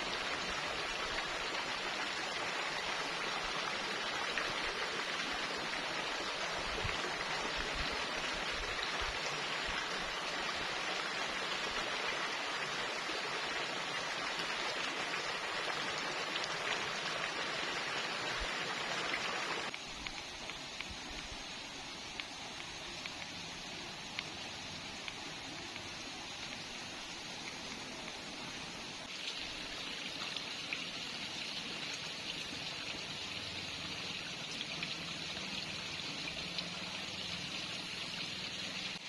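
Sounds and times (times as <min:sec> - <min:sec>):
rushing water: 0:00.0 - 0:39.0
faint ticks: 0:19.7 - 0:21.4, 0:22.0 - 0:26.7.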